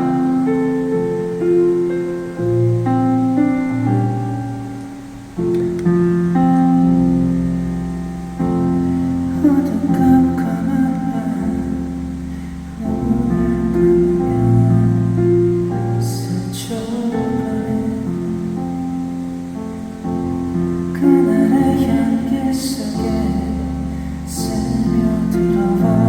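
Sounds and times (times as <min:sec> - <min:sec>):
slow piano chords: 0:00.0 - 0:26.0
person singing softly: 0:09.2 - 0:19.3, 0:20.8 - 0:26.0.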